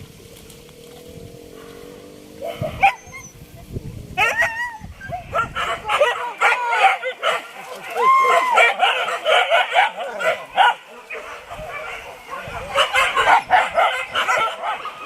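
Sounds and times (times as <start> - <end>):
dogs yelping and baying: 2.4 - 3.4, 4.2 - 15.0.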